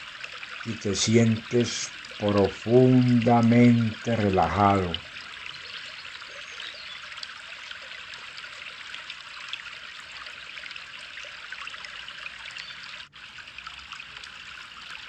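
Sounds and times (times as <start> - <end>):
trickling water: 0.0 - 15.0.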